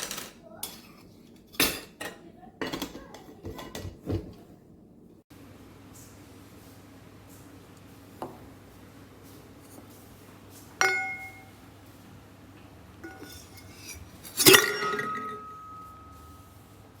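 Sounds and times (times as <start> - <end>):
hard objects clinking and ringing: 13.0 - 16.6.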